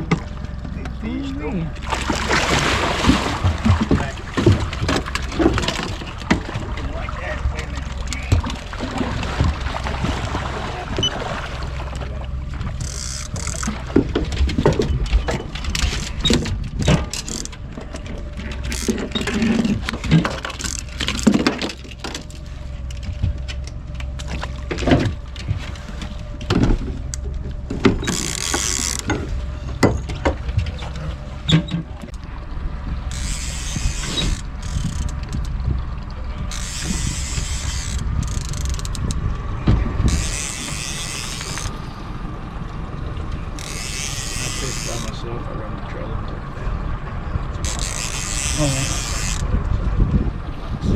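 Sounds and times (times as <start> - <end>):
low hum: 0.0 - 50.9
fishing gear clattering: 1.8 - 9.7, 12.6 - 31.0, 33.1 - 39.3, 40.0 - 41.8, 43.5 - 45.2, 47.5 - 49.5.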